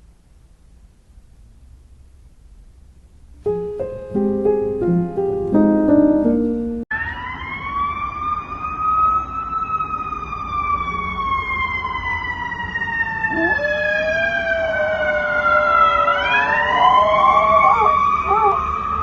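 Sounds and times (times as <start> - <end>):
siren wailing: 6.9 - 19.0.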